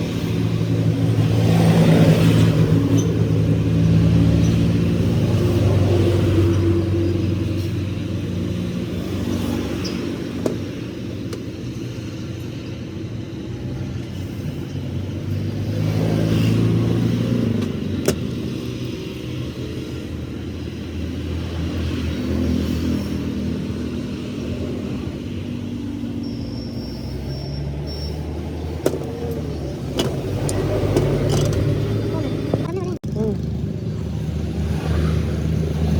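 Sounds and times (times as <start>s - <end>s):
vehicle engine running: 28.4s - 35.9s.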